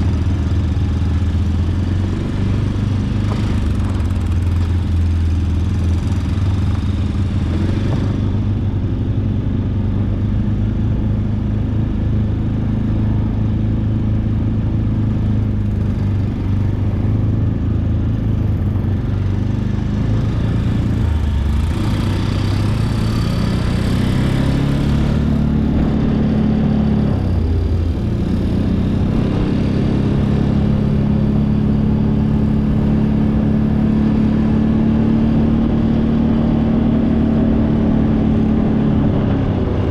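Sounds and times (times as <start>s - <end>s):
atv engine running: 0.0s - 39.9s.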